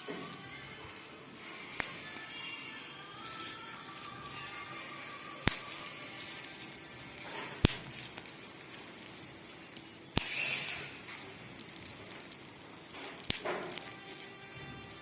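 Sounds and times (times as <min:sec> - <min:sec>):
bubble wrap popping: 0:00.0 - 0:15.0.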